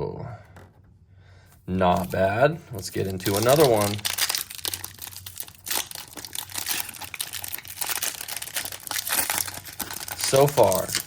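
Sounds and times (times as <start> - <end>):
foil wrapper crinkling and tearing: 2.9 - 11.0.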